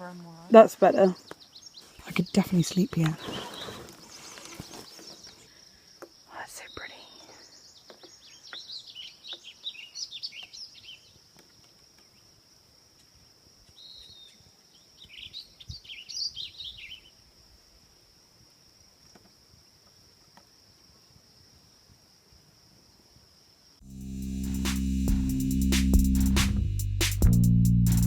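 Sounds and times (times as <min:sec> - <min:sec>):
songbird chirping: 0:00.0 - 0:23.0.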